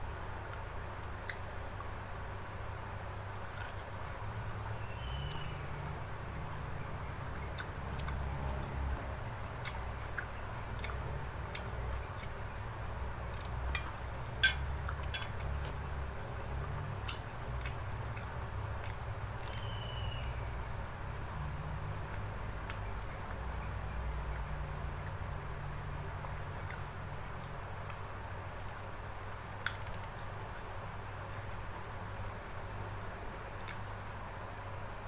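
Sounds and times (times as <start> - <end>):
chewing close to microphone: 3.2 - 4.6, 9.5 - 19.7, 26.5 - 29.0
utensils clicking on plate: 13.7 - 15.4.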